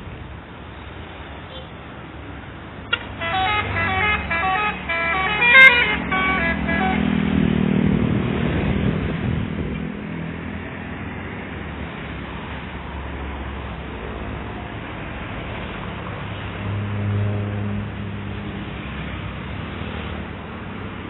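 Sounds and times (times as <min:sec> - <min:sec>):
heavy vehicle engine rumbling: 0:00.0 - 0:21.0
multi-tone musical air horn: 0:02.9 - 0:07.3.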